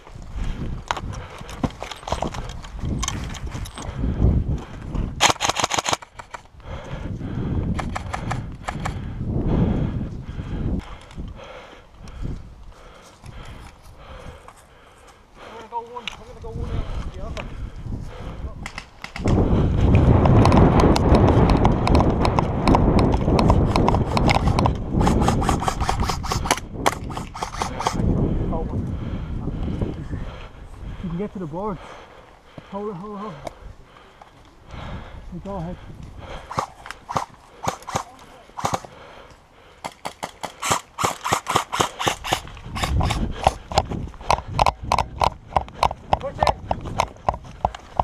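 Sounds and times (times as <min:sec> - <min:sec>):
rumbling handling noise: 0:00.0 - 0:09.1
rattling gear: 0:00.8 - 0:04.0
airsoft guns firing: 0:05.2 - 0:06.4, 0:23.4 - 0:28.0, 0:36.5 - 0:39.0, 0:39.8 - 0:43.6
running footsteps: 0:28.8 - 0:48.0.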